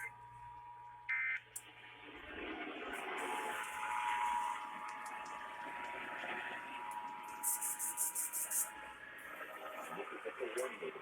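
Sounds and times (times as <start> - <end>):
static hiss: 7.2 - 8.7.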